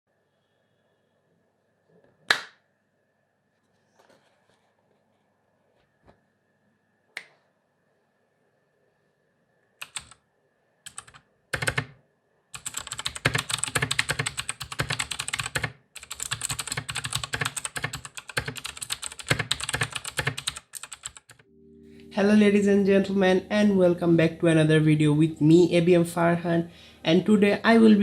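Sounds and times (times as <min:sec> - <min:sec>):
clicky mechanical keyboard typing: 0:09.8 - 0:10.2, 0:10.9 - 0:12.0, 0:12.6 - 0:21.4.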